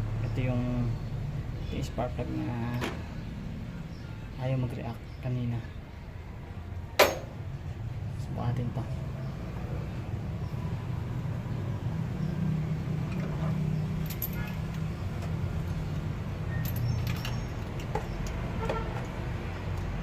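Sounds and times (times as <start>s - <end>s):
metallic tool clinks: 14.0s - 14.8s, 16.5s - 17.5s.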